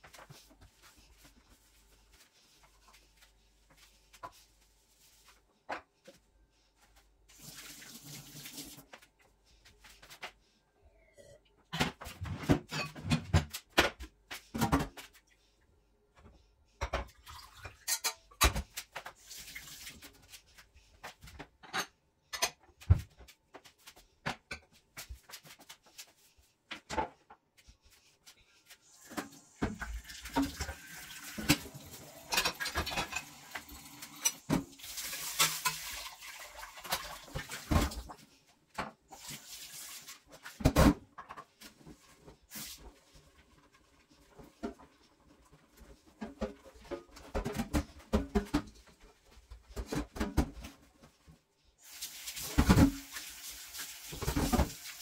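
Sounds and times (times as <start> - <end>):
tap water running: 7.3 - 9.0, 28.9 - 38.2, 51.8 - 55.0
dishes clinking in a sink: 12.5 - 13.4, 16.8 - 18.6, 21.6 - 22.7, 31.4 - 36.0.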